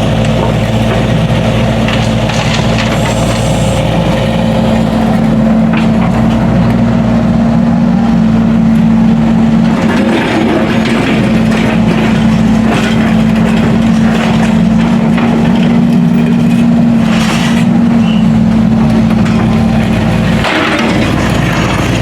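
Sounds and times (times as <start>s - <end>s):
diesel engine running under load: 0.0s - 22.0s
metallic clanks and scrapes: 9.8s - 17.7s.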